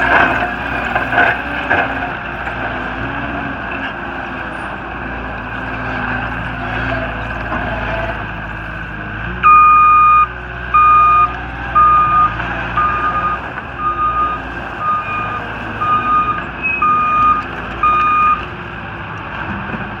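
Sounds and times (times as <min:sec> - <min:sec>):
diesel engine running: 0:00.0 - 0:20.0
backup alarm beeping: 0:09.4 - 0:18.4.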